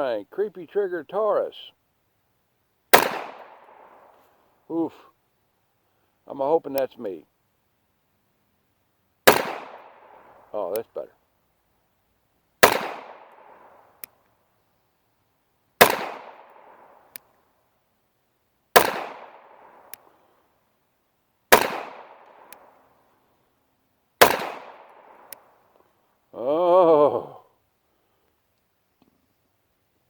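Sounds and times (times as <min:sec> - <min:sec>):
pistol shots with echo: 0:02.9 - 0:04.1, 0:09.3 - 0:10.9, 0:12.6 - 0:14.1, 0:15.8 - 0:17.2, 0:18.8 - 0:20.1, 0:21.5 - 0:22.9, 0:24.2 - 0:25.4
faint tick: 0:19.9 - 0:20.1.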